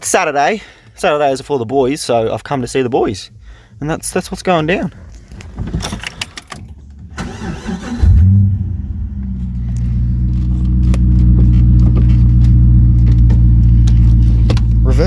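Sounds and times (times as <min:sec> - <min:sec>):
car engine starting and idling: 0:05.2 - 0:15.0.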